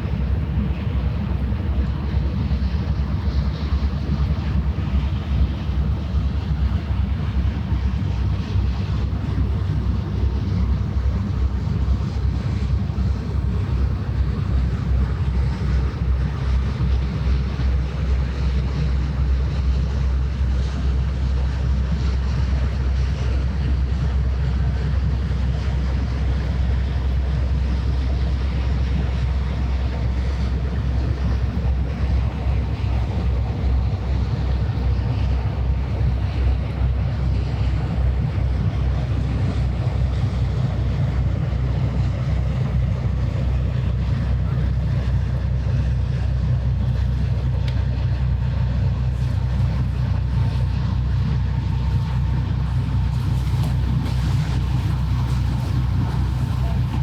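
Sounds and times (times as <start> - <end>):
ship engine drone: 0.0 - 57.0
wind buffeting microphone: 0.0 - 57.0
water washing: 22.8 - 57.0.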